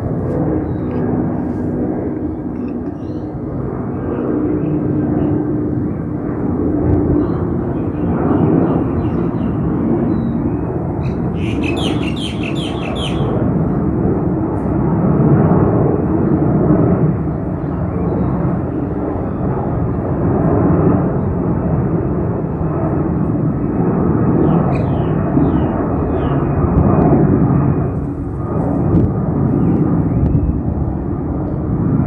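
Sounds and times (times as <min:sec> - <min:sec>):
distant jet airliner rumble: 0:00.0 - 0:32.0
bird chirps: 0:11.0 - 0:13.4, 0:24.4 - 0:26.4.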